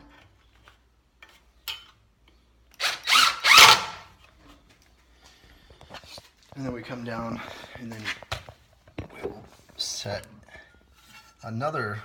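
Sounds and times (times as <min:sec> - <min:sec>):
tool whirring and rattling: 0:02.8 - 0:04.1.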